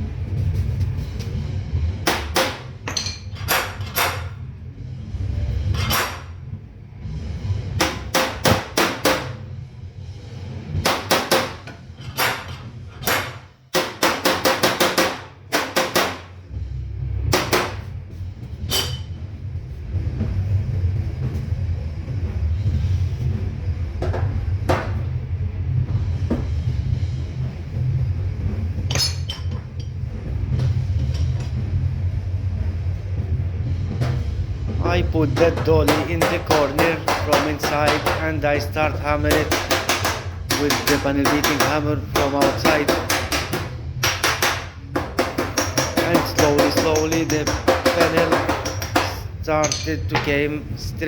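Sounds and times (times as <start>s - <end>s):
hammer striking steel: 2.0s - 4.3s, 5.7s - 6.3s, 7.8s - 9.5s, 10.8s - 16.3s, 17.3s - 17.9s, 18.6s - 19.2s, 28.9s - 29.9s, 35.2s - 50.4s
background music: 10.4s - 51.0s.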